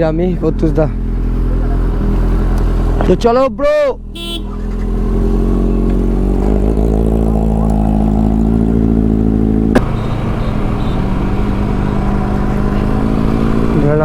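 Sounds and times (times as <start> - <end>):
motorcycle engine pulling: 4.3 - 14.0.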